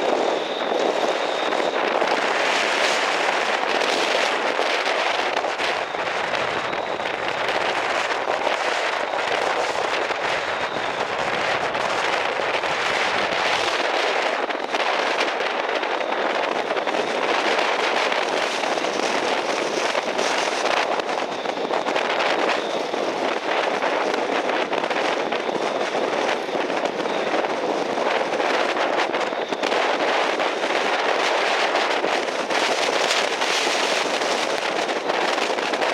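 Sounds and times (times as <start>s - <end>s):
strong wind: 0.0s - 35.9s.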